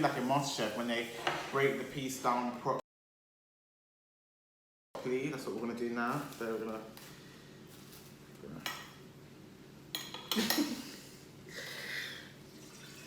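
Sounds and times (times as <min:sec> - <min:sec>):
cutlery clattering: 0:10.0 - 0:10.8.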